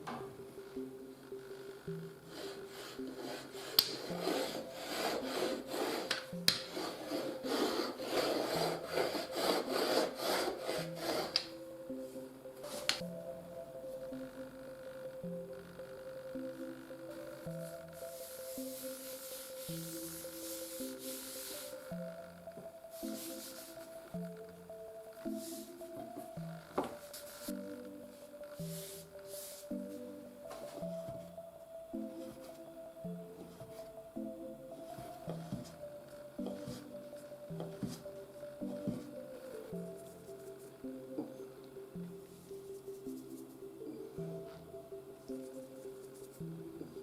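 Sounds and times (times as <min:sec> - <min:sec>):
background music of sustained notes: 0:00.0 - 0:47.0
dough rubbing and scraping: 0:02.3 - 0:11.5.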